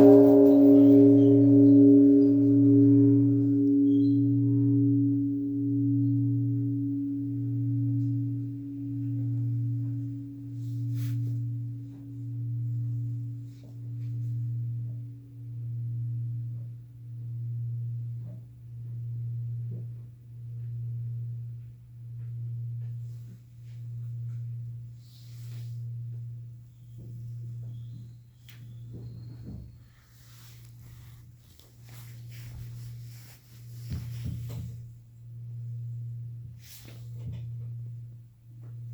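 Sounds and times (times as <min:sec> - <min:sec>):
temple bell ringing: 0:00.0 - 0:18.0.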